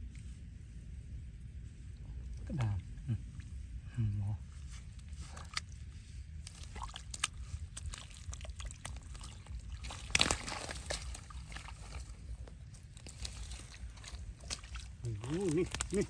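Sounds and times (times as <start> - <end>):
water sloshing and splashing: 4.6 - 16.0.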